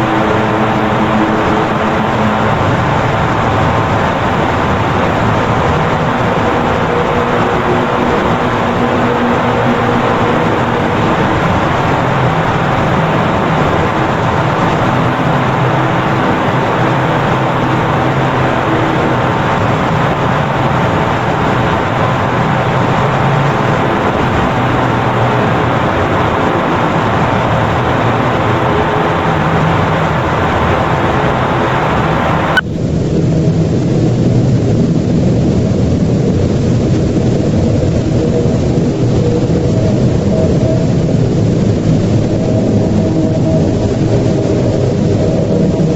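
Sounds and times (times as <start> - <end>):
faint humming tones: 0.0 - 32.8
loud steady rumbling: 0.0 - 45.9.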